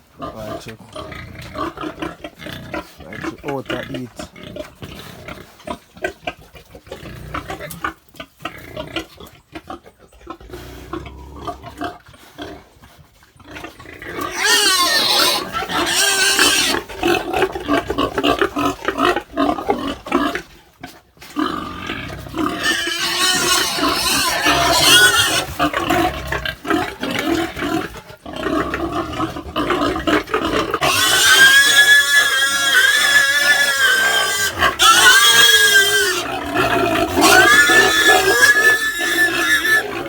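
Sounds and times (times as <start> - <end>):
pigs grunting: 0.0 - 40.0
pigs squealing loudly: 13.4 - 20.5, 21.4 - 40.0.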